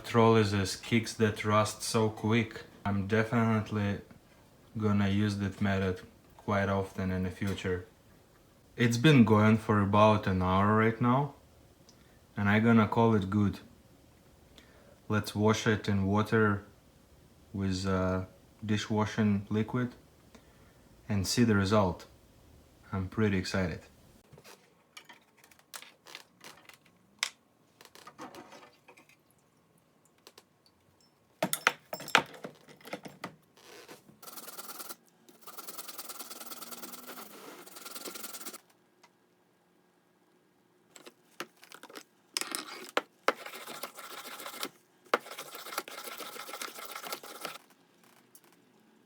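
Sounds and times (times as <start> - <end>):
running water and scrubbing: 34.2 - 38.6, 42.8 - 47.6.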